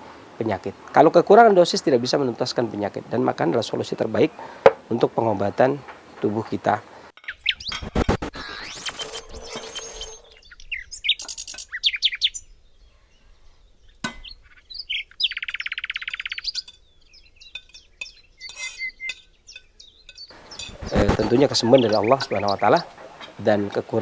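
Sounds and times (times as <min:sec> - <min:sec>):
small birds chirping: 0:00.4 - 0:24.0
bird trill: 0:07.2 - 0:23.4.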